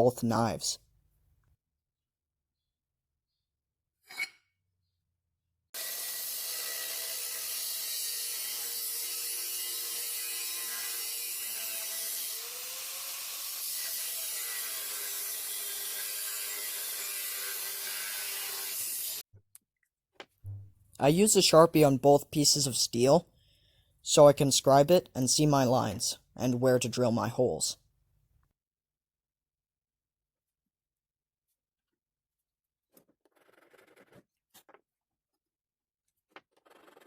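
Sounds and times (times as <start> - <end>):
power tool grinding steel: 5.8 - 19.2.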